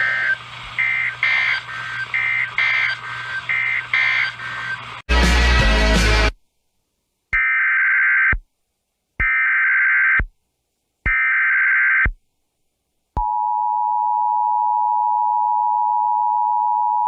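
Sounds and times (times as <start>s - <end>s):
digital data screech bursts: 0.0s - 5.0s
steady attention tone: 0.0s - 5.0s.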